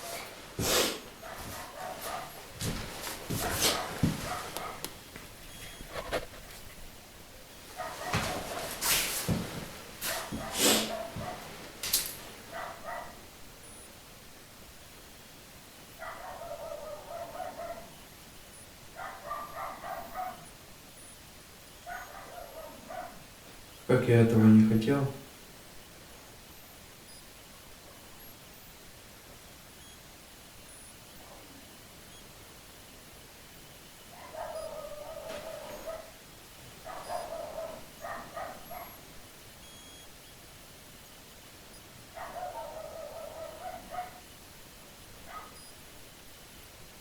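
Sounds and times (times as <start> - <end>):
dogs barking: 1.2 - 2.7, 3.3 - 5.0, 7.7 - 8.7, 10.0 - 11.6, 12.4 - 13.3, 16.0 - 18.0, 18.9 - 20.5, 21.8 - 23.3, 34.1 - 36.2, 36.8 - 39.1, 42.1 - 44.3, 45.2 - 45.7
dog whining: 34.2 - 36.1, 36.9 - 39.0.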